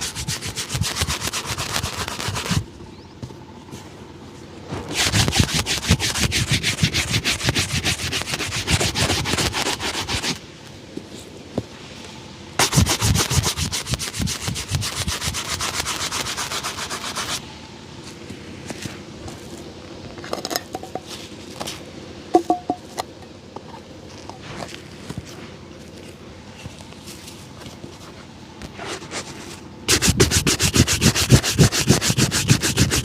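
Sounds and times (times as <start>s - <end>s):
rhythmic rubbing on a shoe: 0.0s - 2.7s, 4.8s - 10.4s, 12.6s - 17.4s, 28.9s - 33.0s.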